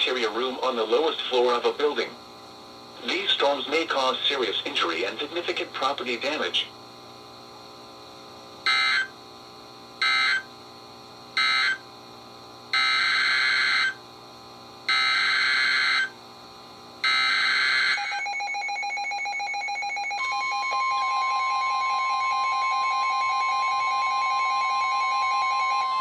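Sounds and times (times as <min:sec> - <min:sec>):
harsh buzzing data bursts: 0:08.6 - 0:09.2, 0:10.0 - 0:10.5, 0:11.4 - 0:11.8, 0:12.7 - 0:14.0, 0:14.9 - 0:16.2, 0:17.0 - 0:18.2
steady warning alarm tone: 0:08.6 - 0:09.2, 0:10.0 - 0:10.5, 0:11.4 - 0:11.8, 0:12.7 - 0:14.0, 0:14.9 - 0:16.2, 0:17.0 - 0:26.0.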